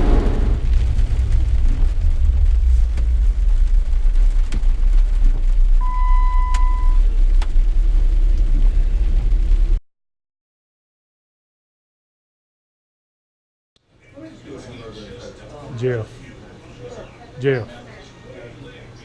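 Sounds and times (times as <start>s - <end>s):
loud low rumble: 0.0s - 9.8s
electronic beep: 5.8s - 7.0s.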